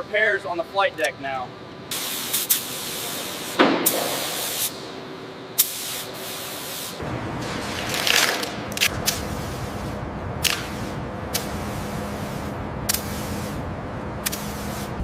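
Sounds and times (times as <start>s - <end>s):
high-pressure spray hissing: 1.9s - 4.8s, 14.2s - 15.0s.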